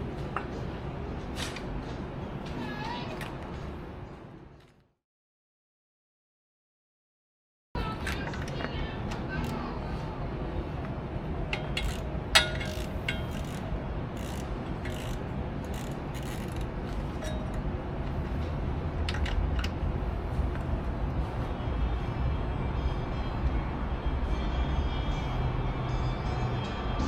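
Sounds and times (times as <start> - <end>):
steady low rumble: 7.8 - 27.0.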